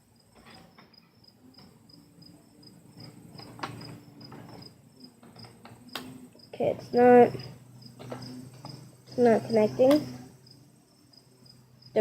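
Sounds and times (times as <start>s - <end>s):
cricket chirping: 0.0s - 12.0s.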